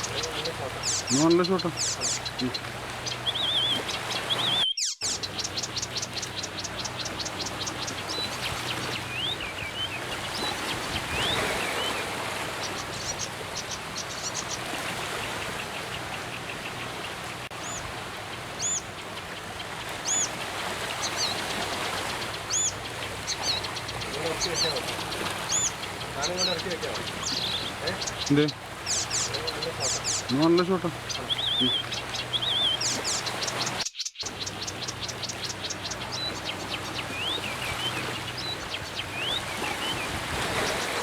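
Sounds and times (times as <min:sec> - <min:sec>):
wild birds calling: 0:00.0 - 0:41.0.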